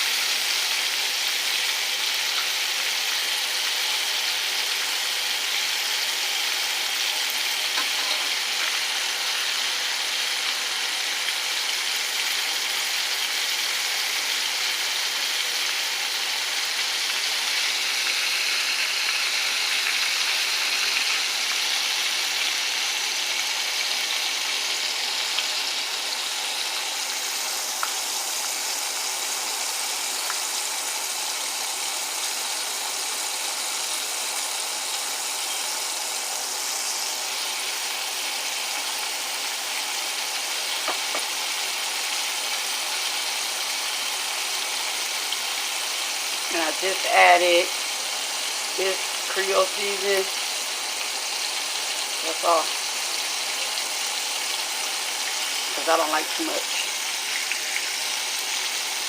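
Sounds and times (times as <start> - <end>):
ribs sizzling in hot oil: 0.0 - 59.0.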